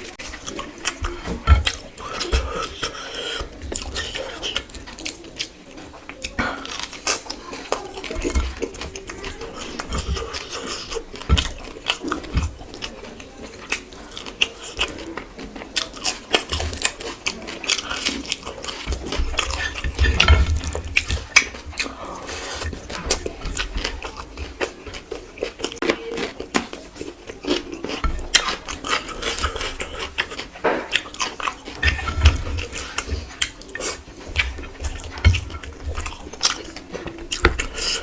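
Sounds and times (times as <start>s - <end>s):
chewing and mouth sounds: 0.0s - 38.0s
dishes clinking: 17.9s - 25.0s.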